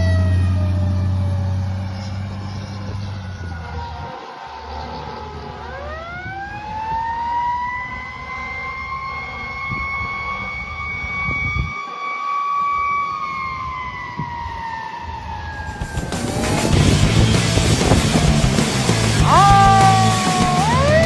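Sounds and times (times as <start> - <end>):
vehicle rumble: 0.0 - 4.2, 15.5 - 21.0
fire truck siren wailing: 0.0 - 21.0.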